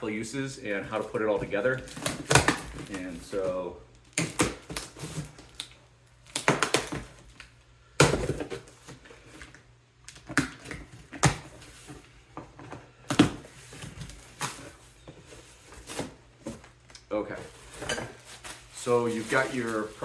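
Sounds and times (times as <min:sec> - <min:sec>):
packaging rustling: 0:00.6 - 0:07.5, 0:13.3 - 0:20.0.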